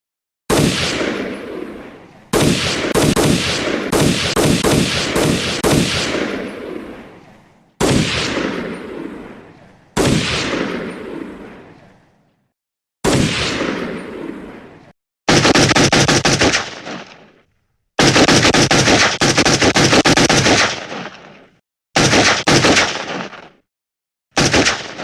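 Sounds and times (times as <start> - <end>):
rapid gunfire: 0.5 - 1.7, 2.3 - 6.8, 15.3 - 17.3, 18.0 - 21.4, 22.0 - 23.7, 24.4 - 25.0
echoing gunshots: 0.5 - 12.3, 13.0 - 23.6, 24.4 - 25.0.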